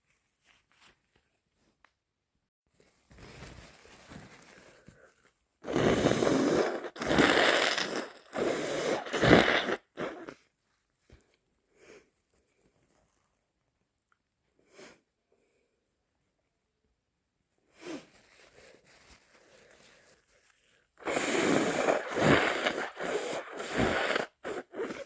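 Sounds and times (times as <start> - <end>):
person snuffling: 2.8 - 10.4, 17.7 - 25.0
person blowing nose: 5.6 - 10.4, 17.7 - 19.8, 21.0 - 25.0.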